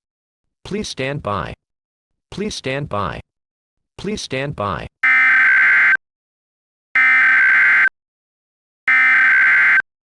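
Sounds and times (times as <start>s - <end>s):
digital warbling data bursts: 5.0s - 6.0s, 7.0s - 7.9s, 8.9s - 9.8s.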